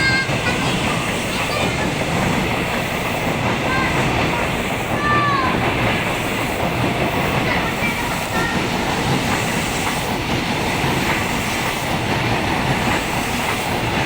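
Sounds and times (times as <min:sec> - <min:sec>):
train wheels rumbling on rails: 0:00.0 - 0:14.0.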